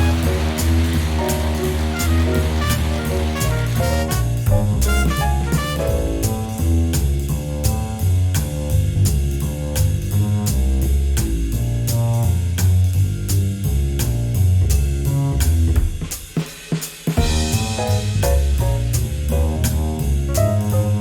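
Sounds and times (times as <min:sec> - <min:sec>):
upbeat instrumental music: 0:00.0 - 0:06.8, 0:17.2 - 0:19.8
bass: 0:00.0 - 0:21.0
drum kit beat: 0:00.0 - 0:21.0.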